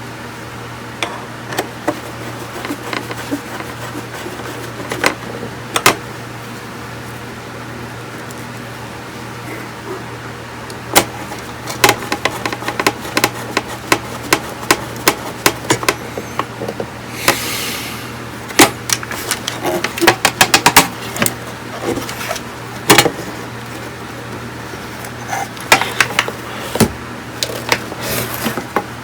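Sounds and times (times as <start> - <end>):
steady low hum: 0.0 - 29.0.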